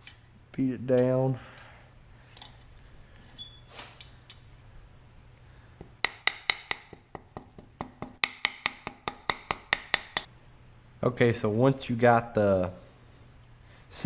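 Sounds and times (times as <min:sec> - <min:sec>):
hammer tapping metal: 0:05.8 - 0:10.3.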